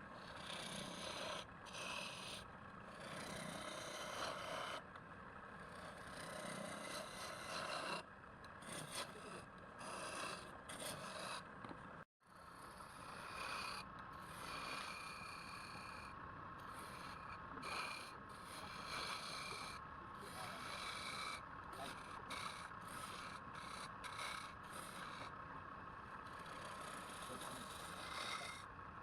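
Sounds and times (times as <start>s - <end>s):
turning tool cutting wood on lathe: 6.0s - 8.0s, 15.8s - 25.3s, 26.2s - 28.6s.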